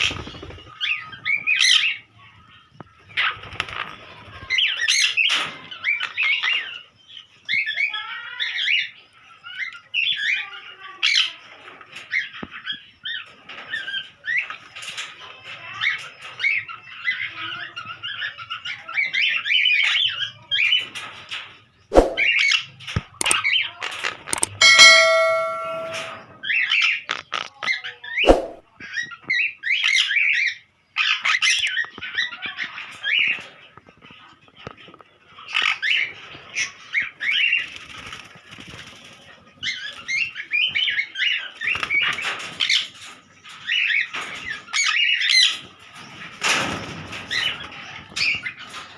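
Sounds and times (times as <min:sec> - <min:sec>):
held ringing tone: 0:24.4 - 0:26.3.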